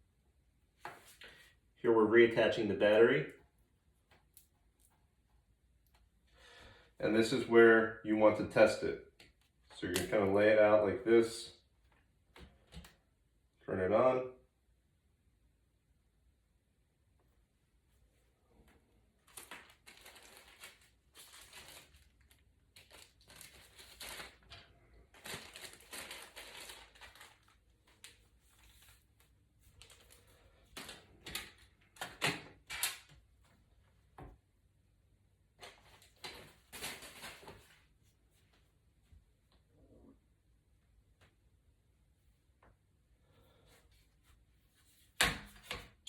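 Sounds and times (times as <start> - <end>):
rustling and crinkling handling: 18.1 - 34.2, 35.6 - 39.2.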